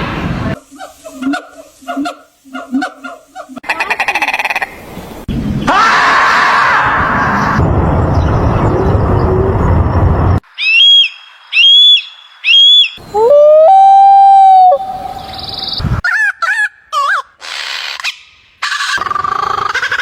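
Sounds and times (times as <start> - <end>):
animal calls: 0.6 - 4.7, 16.0 - 20.0.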